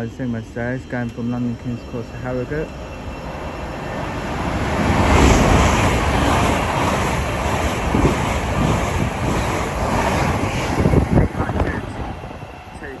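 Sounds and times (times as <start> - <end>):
high-speed train passing: 0.0 - 13.0
wind buffeting microphone: 4.3 - 13.0.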